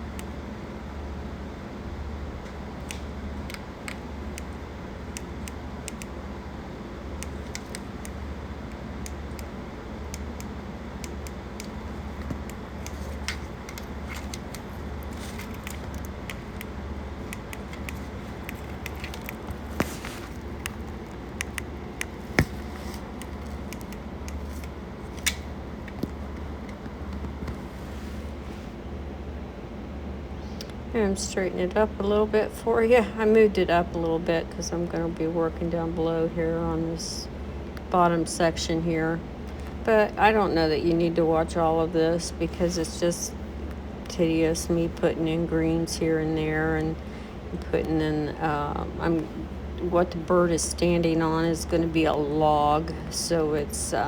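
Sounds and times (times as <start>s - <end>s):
air compressor throbbing hum: 0.0s - 31.1s
light clicks and taps of handling: 7.2s - 27.7s.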